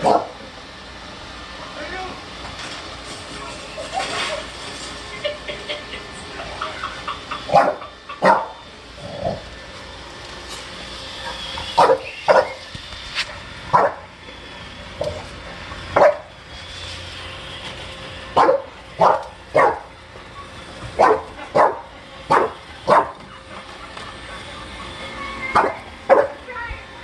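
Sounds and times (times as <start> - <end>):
dog barking: 0.0 - 0.3, 7.5 - 8.6, 11.8 - 12.6, 13.7 - 14.0, 16.0 - 16.3, 18.4 - 19.9, 21.0 - 23.2, 25.6 - 26.4.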